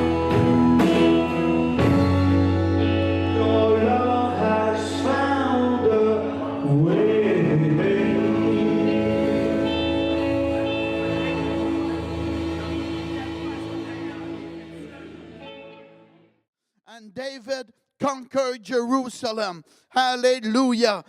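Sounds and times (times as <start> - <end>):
sustained instrumental chords: 0.0 - 16.4
person singing: 2.2 - 14.8.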